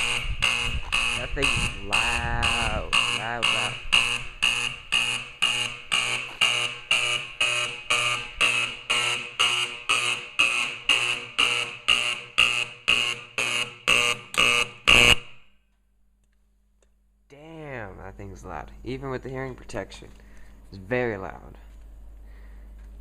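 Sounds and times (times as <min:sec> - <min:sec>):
pulsing fire alarm horn: 0:00.0 - 0:15.5.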